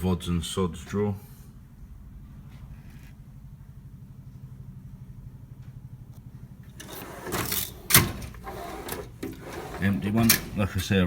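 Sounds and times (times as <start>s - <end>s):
pulsing mechanical hum: 3.5s - 10.8s
metal drawer sliding open: 6.7s - 10.9s.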